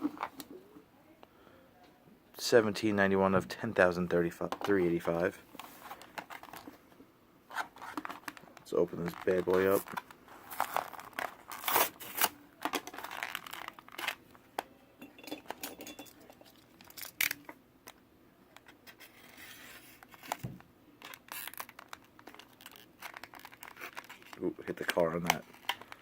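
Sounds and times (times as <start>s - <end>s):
plastic packaging tearing: 9.0s - 14.2s, 18.9s - 26.0s.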